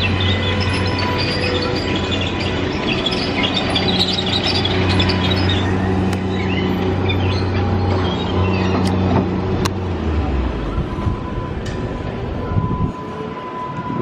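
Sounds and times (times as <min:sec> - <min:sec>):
birds chirping: 0:00.0 - 0:09.2.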